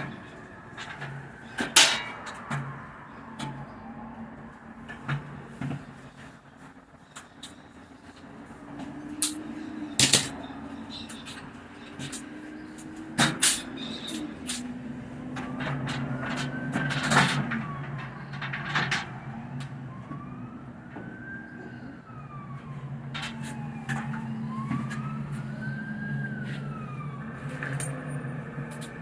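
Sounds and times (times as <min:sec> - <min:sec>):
siren wailing: 0:00.0 - 0:05.4, 0:07.7 - 0:29.0.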